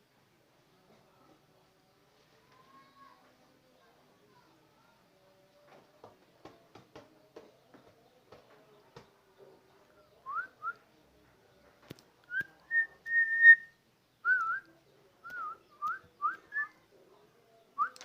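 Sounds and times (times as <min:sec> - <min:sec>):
whistled notes: 0:12.3 - 0:14.7.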